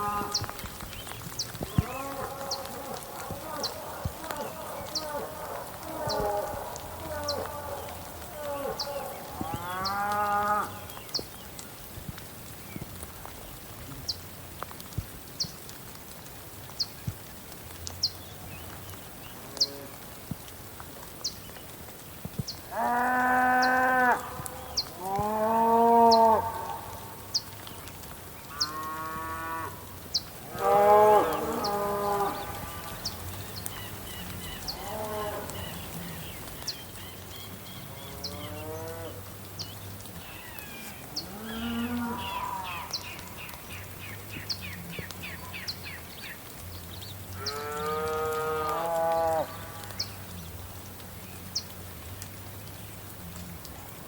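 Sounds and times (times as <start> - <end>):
cattle mooing: 30.5 - 33.0.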